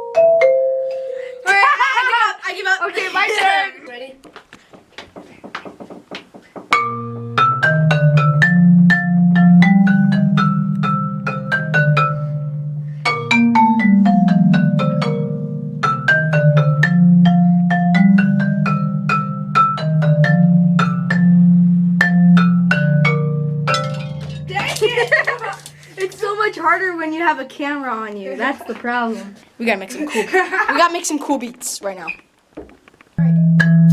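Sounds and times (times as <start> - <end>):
marimba played with mallets: 0.0 - 1.7, 6.7 - 26.3, 33.2 - 33.9.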